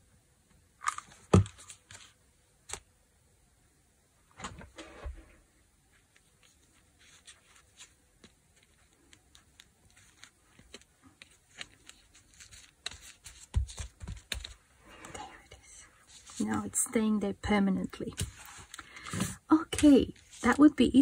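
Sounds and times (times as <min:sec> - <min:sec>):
paper and fabric handling: 0:05.9 - 0:15.1, 0:15.9 - 0:16.8, 0:17.9 - 0:21.0.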